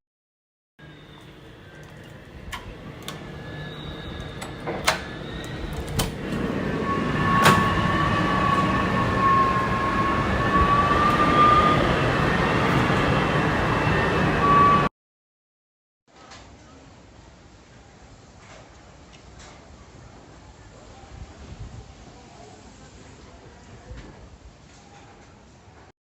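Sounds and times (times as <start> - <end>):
wavering high whistle: 3.4 - 5.7, 6.5 - 14.9.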